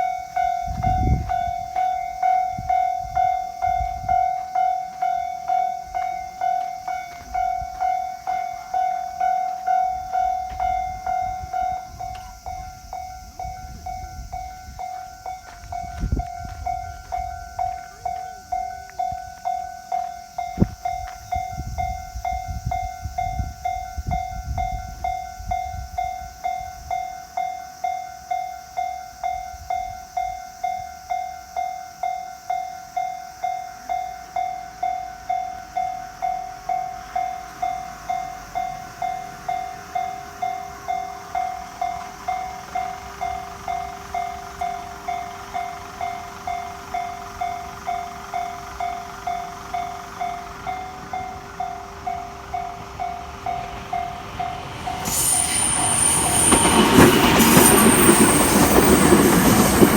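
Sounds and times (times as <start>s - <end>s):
train rumbling past: 0.0s - 27.4s, 33.7s - 59.9s
level crossing warning bell: 0.0s - 59.9s
faint hiss: 24.8s - 59.9s
train wheel knocks: 53.7s - 59.9s.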